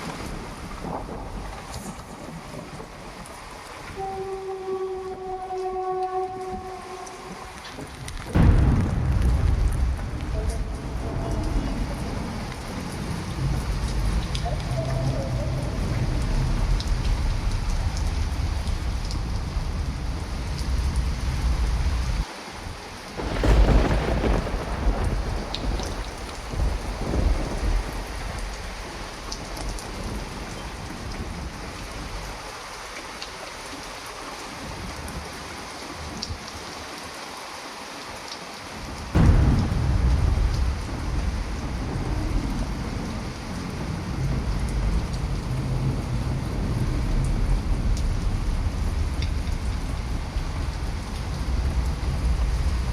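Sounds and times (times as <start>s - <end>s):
thunder rumbling: 0.0s - 4.4s, 6.4s - 22.2s, 23.2s - 32.3s, 39.1s - 52.9s
heavy rain pouring: 0.0s - 52.9s
loud thunderclaps: 8.2s - 22.2s, 23.2s - 31.4s, 39.2s - 52.9s.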